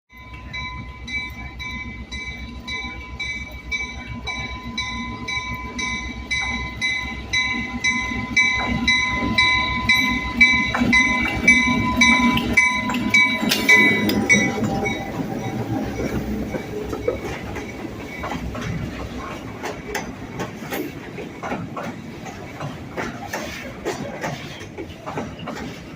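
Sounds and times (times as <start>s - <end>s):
bell ringing steadily: 0.1s - 18.9s
train rumble: 0.1s - 25.9s.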